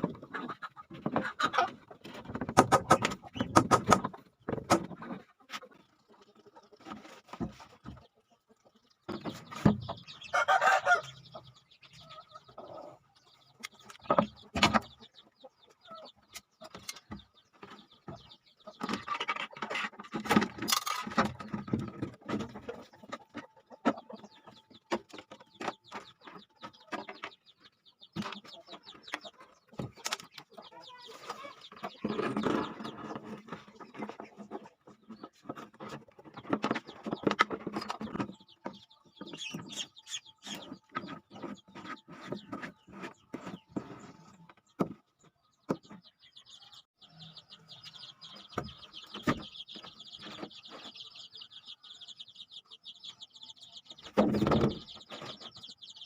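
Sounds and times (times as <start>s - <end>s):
chickens clucking: 0.0s - 56.0s
sharp taps and knocks: 2.3s - 5.0s.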